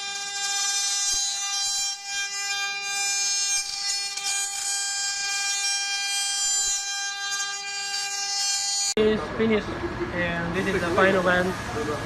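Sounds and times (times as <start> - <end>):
router spindles whining: 0.0 - 9.0.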